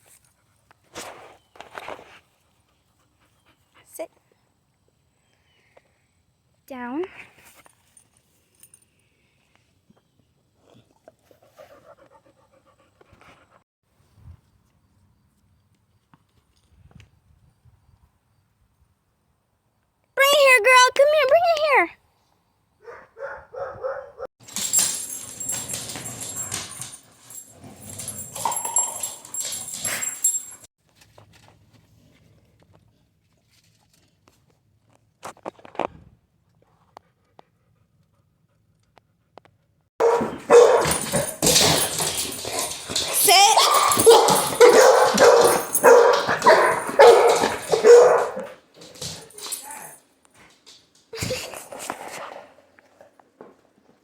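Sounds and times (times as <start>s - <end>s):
rough dog noise: 40.0s - 50.0s.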